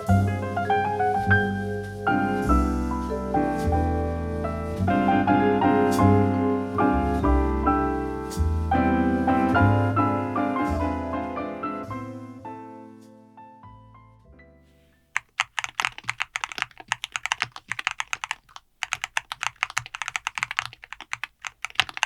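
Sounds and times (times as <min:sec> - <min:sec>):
piano music with bass line: 0:00.0 - 0:14.6.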